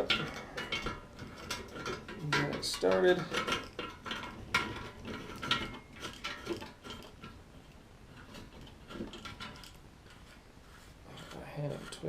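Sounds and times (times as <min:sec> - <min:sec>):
metal tool parts clinking: 0:00.0 - 0:07.4.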